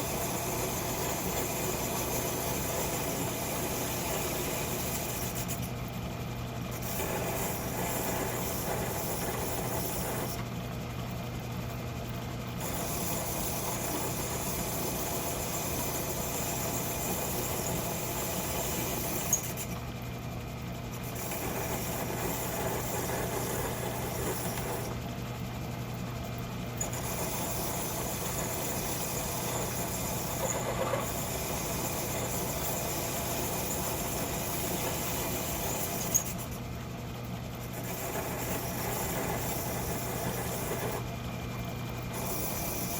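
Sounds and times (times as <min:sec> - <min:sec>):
metal lathe running: 0:06.8 - 0:10.4, 0:21.1 - 0:25.0, 0:26.8 - 0:36.5, 0:37.7 - 0:42.9.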